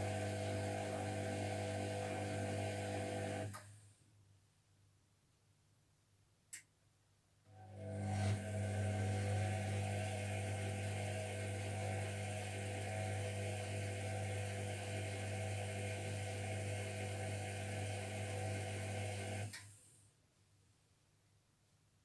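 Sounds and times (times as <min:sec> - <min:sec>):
washing machine humming: 0:00.0 - 0:03.5.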